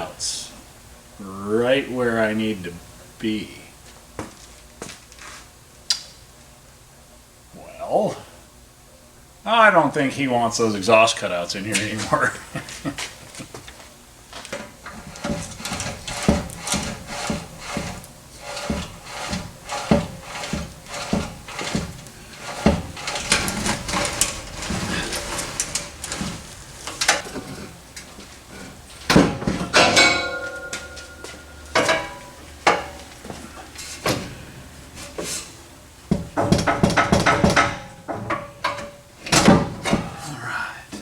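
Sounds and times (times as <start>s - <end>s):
metal clank with ring: 29.7s - 33.0s.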